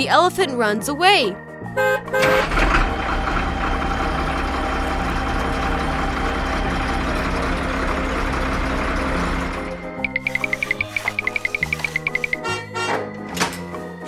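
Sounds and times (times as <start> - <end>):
vehicle engine running: 2.2 - 12.4.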